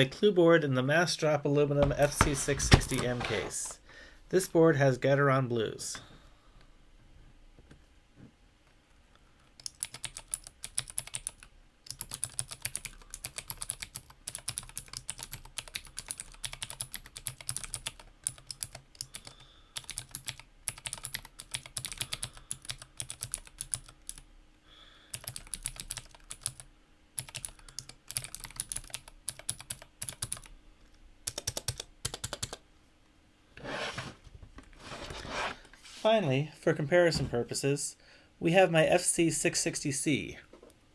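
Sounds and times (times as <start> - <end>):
clicky mechanical keyboard typing: 9.6 - 24.2, 25.1 - 30.5, 31.2 - 32.6.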